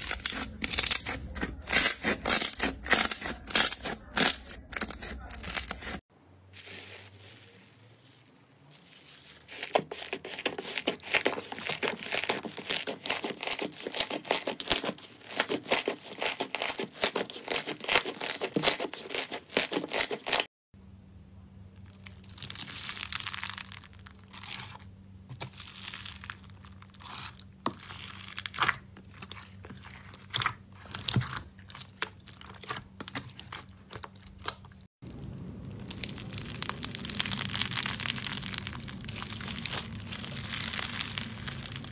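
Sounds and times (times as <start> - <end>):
low steady hum: 20.8 - 41.9
slime squished by hand: 25.4 - 41.9.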